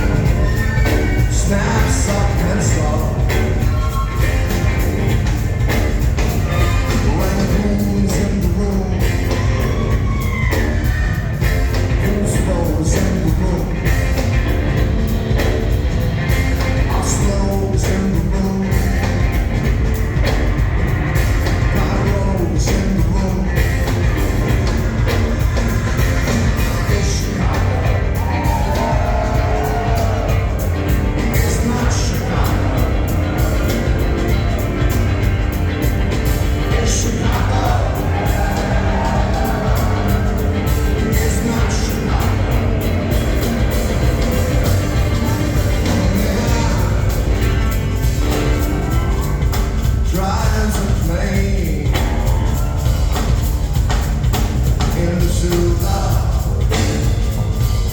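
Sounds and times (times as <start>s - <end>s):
singing vocals: 0.0s - 4.3s, 21.6s - 35.0s, 36.5s - 47.8s
live rock band playing: 0.0s - 57.9s.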